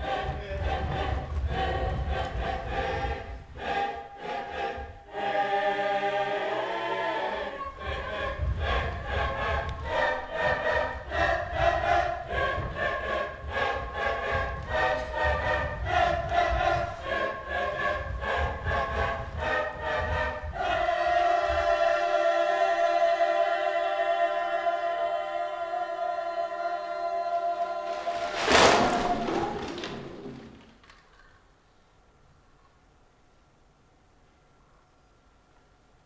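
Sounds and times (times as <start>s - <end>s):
choir singing in harmony: 0.0s - 30.5s.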